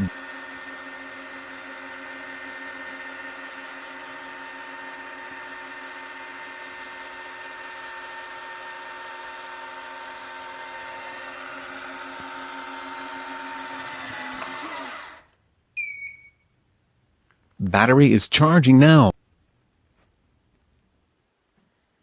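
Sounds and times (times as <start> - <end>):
robot vacuum motor hum: 0.0 - 15.4
held tones: 13.0 - 16.6.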